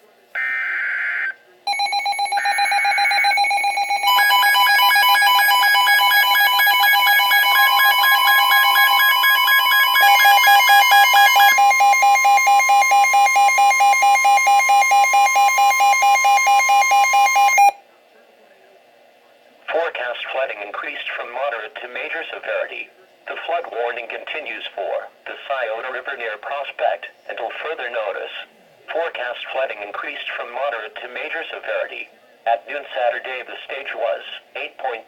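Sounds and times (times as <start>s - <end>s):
pulsing electronic alert signal: 1.7s - 17.8s.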